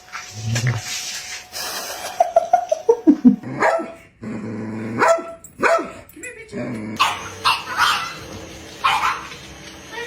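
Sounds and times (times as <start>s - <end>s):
dog barking: 3.6s - 4.0s, 5.0s - 6.0s, 7.0s - 9.4s
dog yelping: 7.0s - 9.4s.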